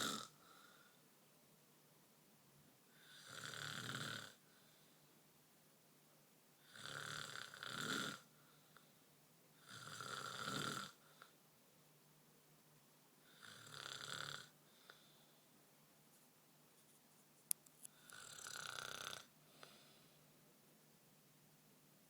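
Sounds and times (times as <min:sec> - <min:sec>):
person snoring: 0:00.0 - 0:00.4, 0:03.0 - 0:04.4, 0:06.7 - 0:08.3, 0:09.6 - 0:11.0, 0:13.3 - 0:14.5, 0:18.0 - 0:19.8.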